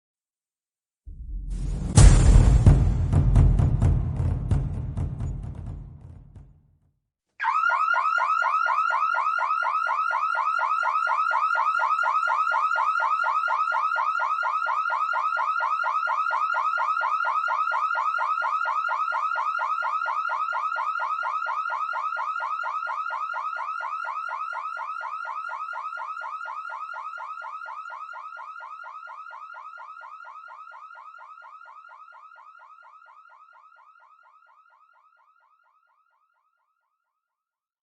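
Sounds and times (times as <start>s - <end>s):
pulsing alarm siren: 7.4s - 36.2s.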